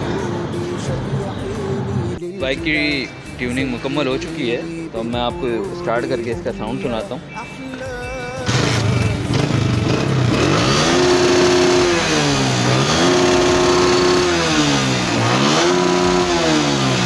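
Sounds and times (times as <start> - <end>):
motorcycle engine revving: 8.4 - 17.0.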